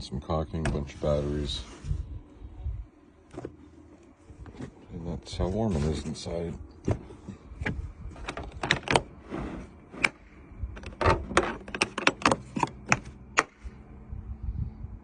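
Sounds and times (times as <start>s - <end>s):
plastic tool case clicks and knocks: 10.8s - 13.6s.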